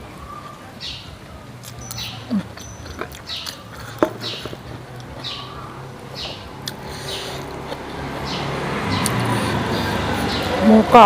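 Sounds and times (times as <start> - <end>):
chewing and lip smacks: 1.6 - 7.9.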